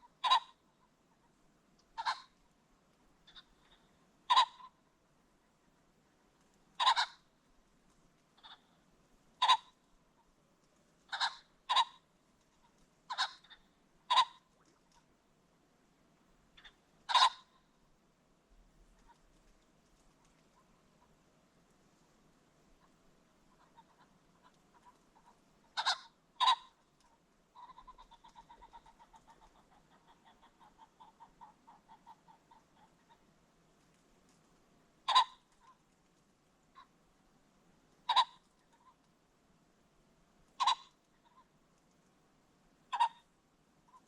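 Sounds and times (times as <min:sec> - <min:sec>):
pheasant calls: 0:00.0 - 0:02.5, 0:03.2 - 0:04.9, 0:06.7 - 0:07.5, 0:08.3 - 0:10.4, 0:11.0 - 0:14.9, 0:16.5 - 0:17.8, 0:22.7 - 0:33.4, 0:35.0 - 0:35.9, 0:38.0 - 0:39.1, 0:40.6 - 0:41.6, 0:42.9 - 0:43.3.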